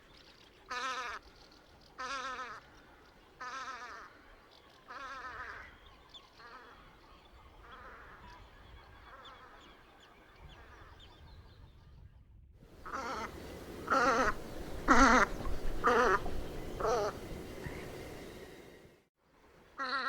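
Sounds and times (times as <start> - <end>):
sea ducks calling: 12.8 - 18.8.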